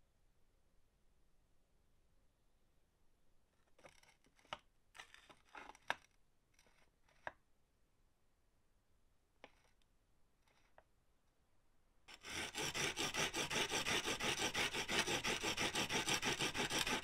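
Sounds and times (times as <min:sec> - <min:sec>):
clicks and scrapes of hand tools: 0:03.6 - 0:07.4, 0:09.4 - 0:09.8, 0:10.4 - 0:10.9, 0:12.1 - 0:17.0.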